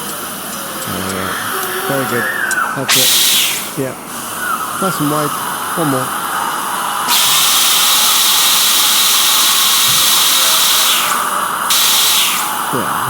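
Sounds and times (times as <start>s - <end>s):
dental drill whine: 0.8s - 13.0s
suction tube hiss: 0.9s - 3.9s, 7.0s - 13.0s
water spray hiss: 2.9s - 3.8s, 7.1s - 12.9s.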